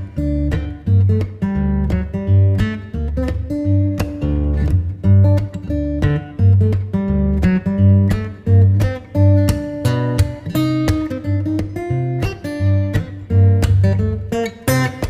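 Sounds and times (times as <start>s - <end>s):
acoustic guitar: 0.0s - 15.0s.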